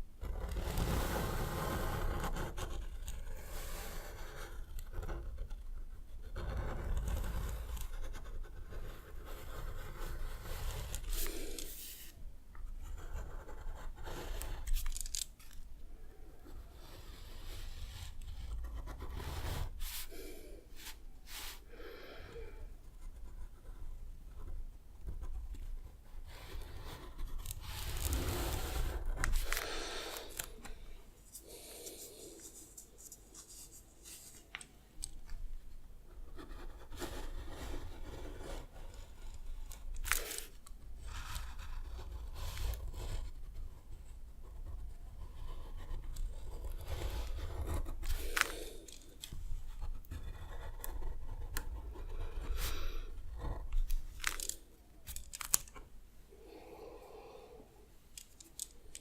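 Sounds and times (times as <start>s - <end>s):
drawing tools scratching on paper: 0.2s - 21.8s, 22.8s - 55.8s
heavy breathing: 29.4s - 32.8s, 56.3s - 58.0s.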